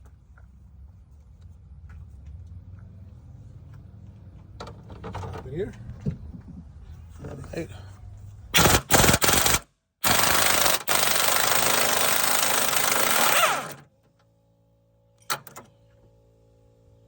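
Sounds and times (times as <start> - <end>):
impact wrench hammering on bolt: 8.6 - 13.8.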